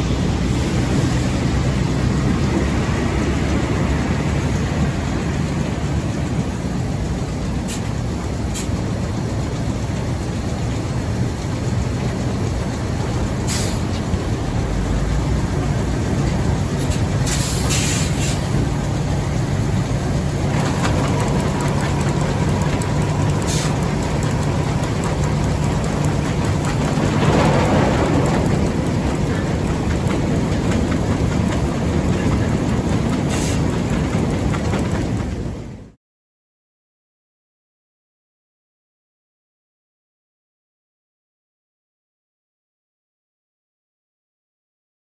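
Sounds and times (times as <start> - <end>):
machinery clanks: 0.0 - 35.9
machinery running with low hum: 0.0 - 36.0.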